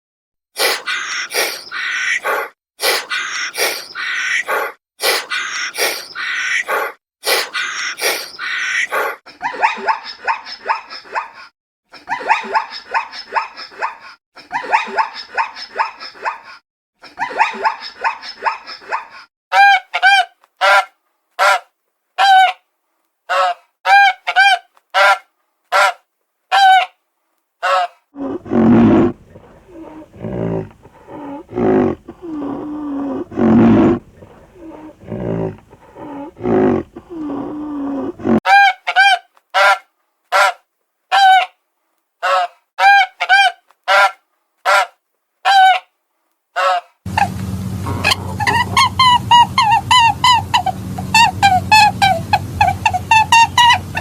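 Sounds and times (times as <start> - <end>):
rapid clustered animal calls: 0.6 - 9.2, 28.2 - 38.4, 47.1 - 54.0
deep growling roar: 28.2 - 38.4, 47.1 - 51.6.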